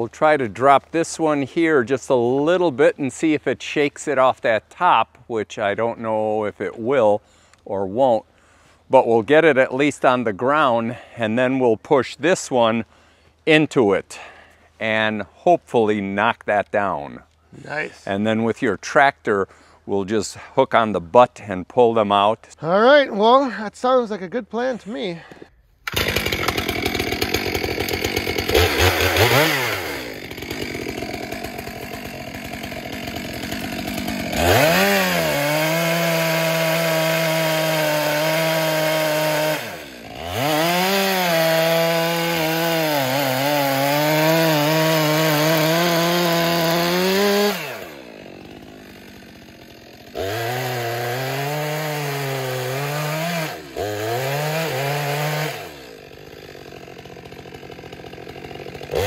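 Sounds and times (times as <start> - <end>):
chainsaw cutting tree: 25.8 - 59.0.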